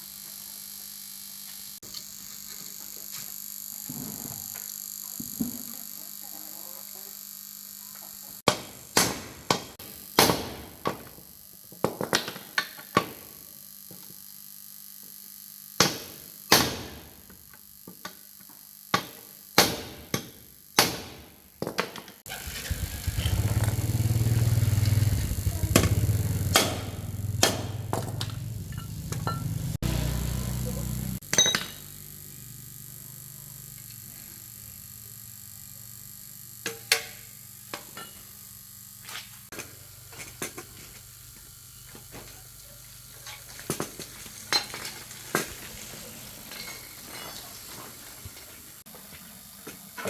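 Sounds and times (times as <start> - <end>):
steady low rumble: 22.3 - 31.2.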